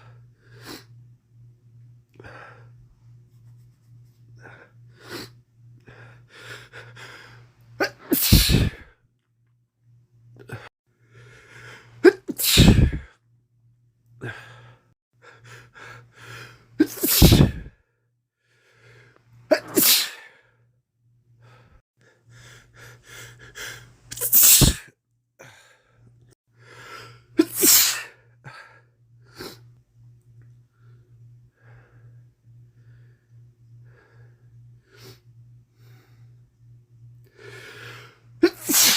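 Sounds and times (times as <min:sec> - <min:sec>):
man sneezing: 0:07.8 - 0:08.9, 0:12.0 - 0:13.1, 0:16.8 - 0:17.7, 0:19.5 - 0:20.3, 0:24.1 - 0:24.9, 0:27.4 - 0:28.2, 0:38.4 - 0:38.9.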